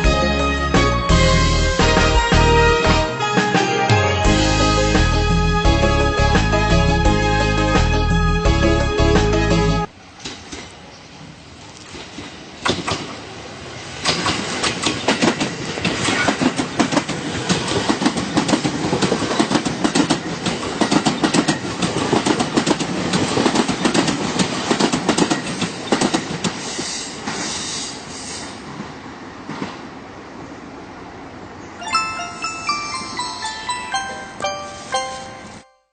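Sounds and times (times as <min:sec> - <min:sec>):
train wheels clicking over rail joints: 0:10.2 - 0:10.8, 0:11.9 - 0:13.3, 0:14.0 - 0:28.5.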